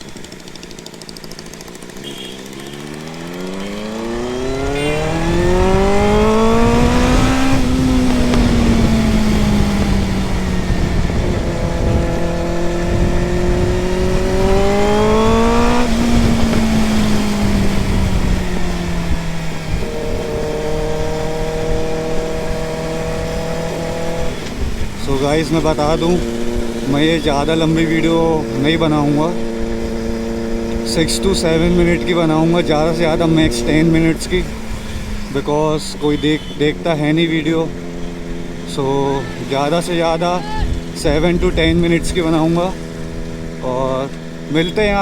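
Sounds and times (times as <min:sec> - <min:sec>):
motorcycle engine accelerating: 0:00.0 - 0:45.0
wind rushing over microphone: 0:03.9 - 0:45.0.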